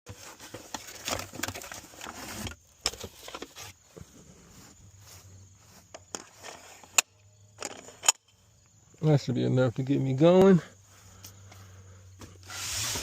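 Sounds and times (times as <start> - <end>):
shotgun shells rattling and clicking: 5.9 - 8.4.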